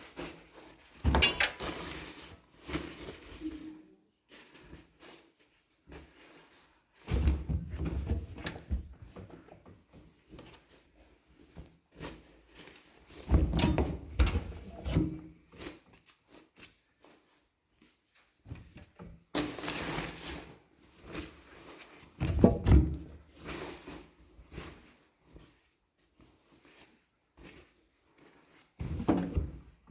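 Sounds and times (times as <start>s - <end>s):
washing machine clunks and thuds: 1.1s - 1.7s, 7.1s - 9.2s, 13.3s - 15.3s, 22.2s - 23.2s, 28.8s - 29.8s.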